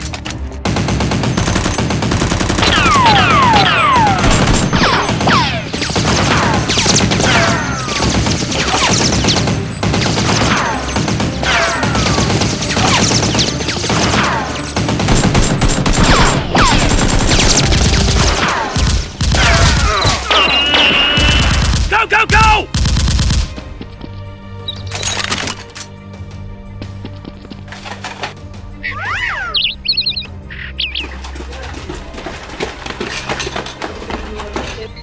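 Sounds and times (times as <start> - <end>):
rapid automatic gunfire: 0.7 - 19.8, 21.1 - 21.9.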